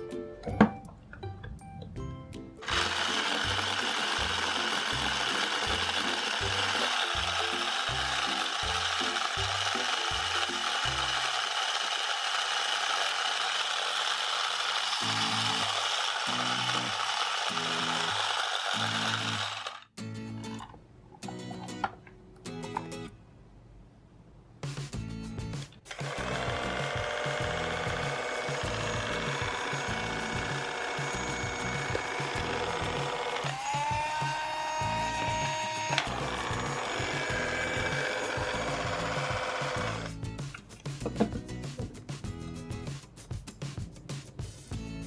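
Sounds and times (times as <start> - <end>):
background music with steady beat: 0.0 - 11.1, 24.6 - 45.0
toy appliance mechanical whirring: 2.6 - 19.9, 25.9 - 41.3.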